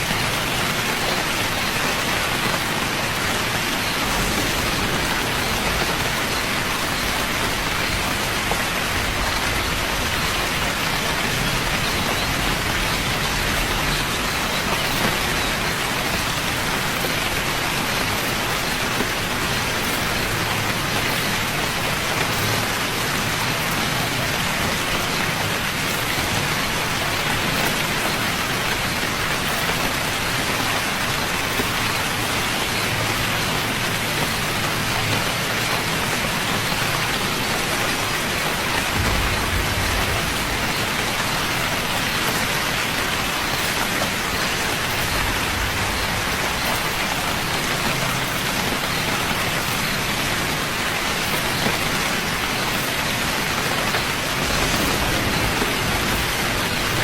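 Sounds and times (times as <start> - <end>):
steady rain falling: 0.0 - 57.0
low rumble: 3.8 - 14.2, 38.9 - 41.8, 54.4 - 57.0.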